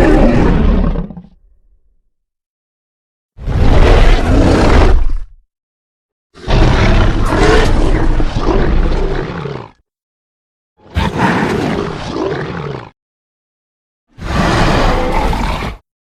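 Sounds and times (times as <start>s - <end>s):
dinosaur roar: 0.0s - 1.4s, 3.4s - 5.4s, 6.4s - 9.8s, 10.8s - 13.0s, 14.2s - 15.9s.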